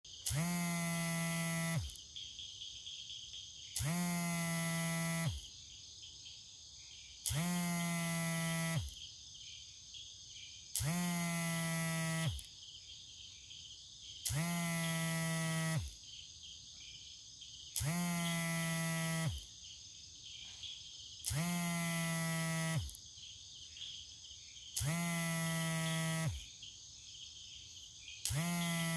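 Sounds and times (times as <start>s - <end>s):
mobile phone vibrating: 0.2s - 2.0s, 3.8s - 5.4s, 7.2s - 9.0s, 10.8s - 12.5s, 14.2s - 16.0s, 17.8s - 19.5s, 21.2s - 23.0s, 24.8s - 26.5s, 28.2s - 28.9s.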